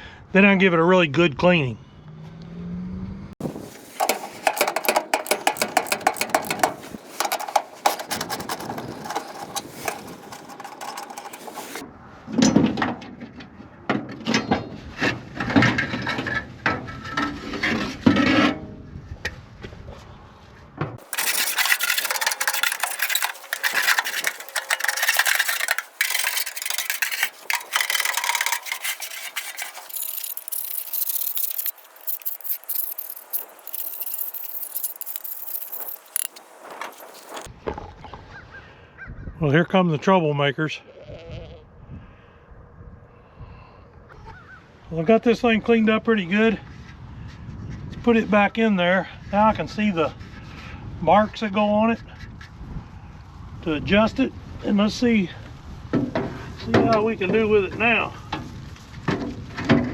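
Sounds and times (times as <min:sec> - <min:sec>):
scraping and rubbing: 0:03.4 - 0:11.8, 0:21.0 - 0:37.5
small knocks and clicks: 0:03.9 - 0:11.8, 0:21.0 - 0:37.5.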